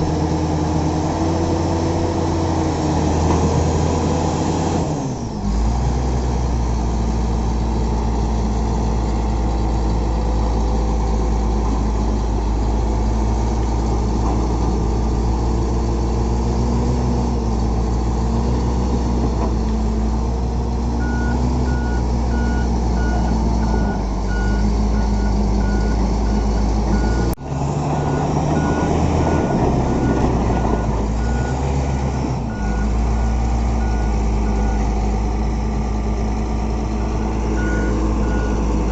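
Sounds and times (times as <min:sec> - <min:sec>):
bulldozer diesel engine running: 0:00.0 - 0:38.9
reversing alarm beeping: 0:21.0 - 0:27.4, 0:28.0 - 0:34.8, 0:37.0 - 0:38.7.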